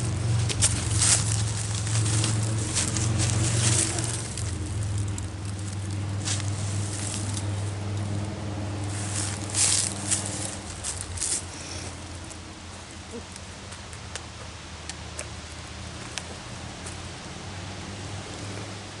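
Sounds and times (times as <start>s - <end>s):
rustling handling noise: 0.0s - 8.2s, 8.8s - 12.5s
low steady hum: 0.0s - 19.0s.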